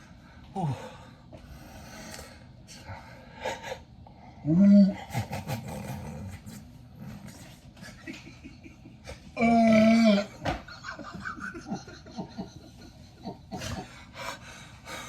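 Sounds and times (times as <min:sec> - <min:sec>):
man burping loudly: 0:09.4 - 0:10.4.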